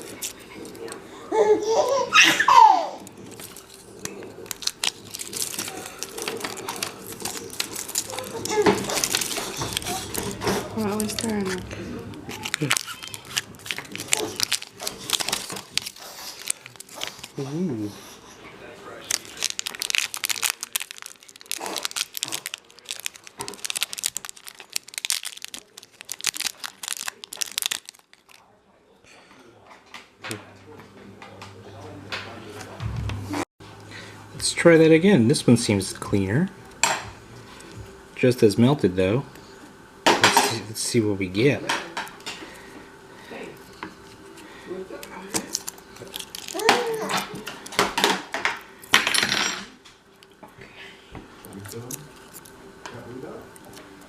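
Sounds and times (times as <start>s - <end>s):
foil wrapper crinkling and tearing: 0.0s - 1.0s, 3.0s - 17.6s, 18.9s - 28.5s, 43.6s - 48.1s, 51.4s - 54.0s.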